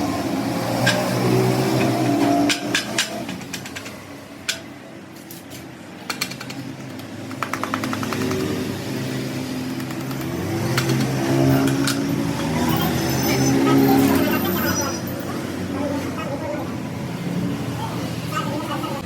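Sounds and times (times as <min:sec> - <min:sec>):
sharp clicks and ticks: 0:06.0 - 0:12.1.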